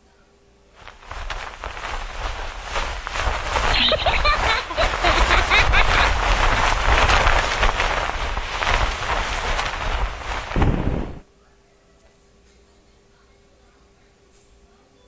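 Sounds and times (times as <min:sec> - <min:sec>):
dense rushing noise: 0:00.8 - 0:11.2.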